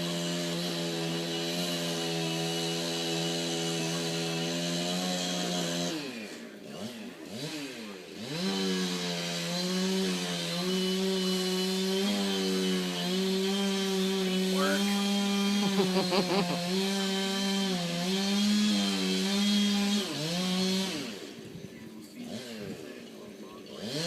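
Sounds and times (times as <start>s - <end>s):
chainsaw cutting at high revs: 0.0s - 21.5s, 22.1s - 23.0s, 23.6s - 24.0s.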